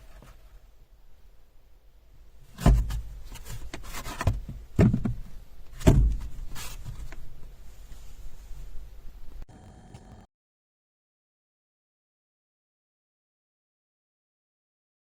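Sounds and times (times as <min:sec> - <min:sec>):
dull thumps and knocks: 0:02.6 - 0:06.4.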